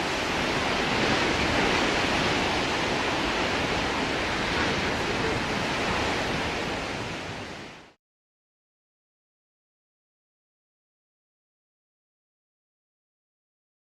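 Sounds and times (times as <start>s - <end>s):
heavy sea: 0.0s - 8.0s
storm wind: 0.0s - 8.0s.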